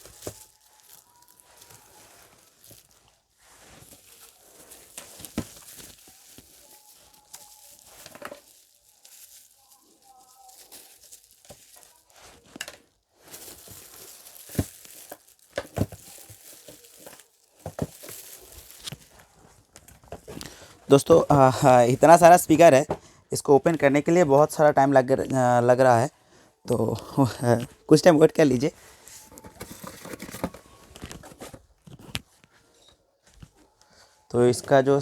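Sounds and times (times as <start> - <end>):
packing crinkling and tearing: 0.0 - 22.7, 27.4 - 32.6.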